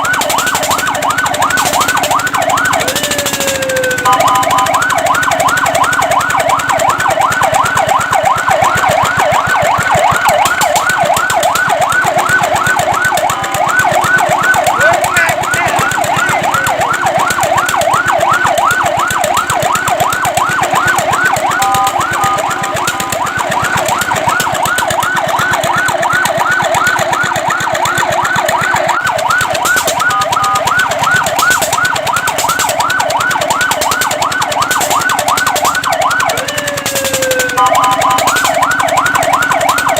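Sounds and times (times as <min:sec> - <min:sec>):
fire truck siren yelping: 0:00.0 - 0:39.9.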